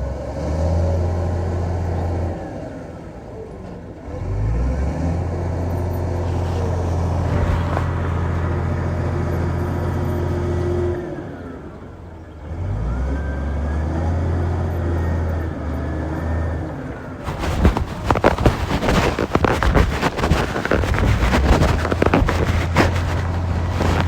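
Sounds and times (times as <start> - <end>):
rough crackling noise: 6.0 - 10.5, 17.2 - 24.0.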